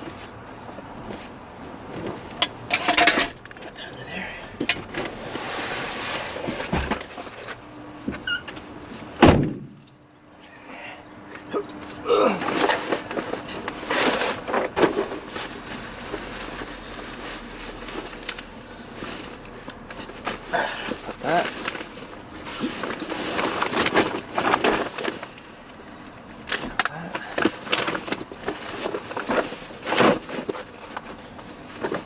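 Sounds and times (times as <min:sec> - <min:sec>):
rustling handling noise: 0:11.7 - 0:32.0.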